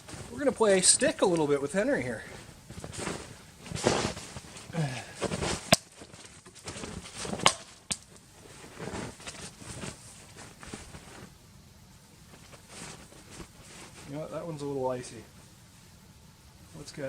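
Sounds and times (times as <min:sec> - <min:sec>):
crunching movement in snow: 0:00.0 - 0:07.4, 0:08.4 - 0:11.4.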